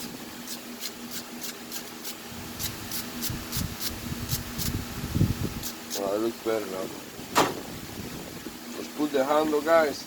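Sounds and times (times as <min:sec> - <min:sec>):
spark plug being scrubbed: 0:00.0 - 0:04.8, 0:05.6 - 0:06.2.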